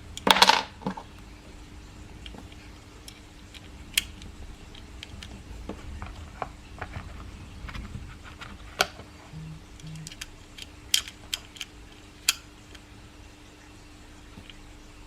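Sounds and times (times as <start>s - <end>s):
faint steady hum: 0.0s - 15.0s
small clicks and taps of toy gun: 12.3s - 12.8s.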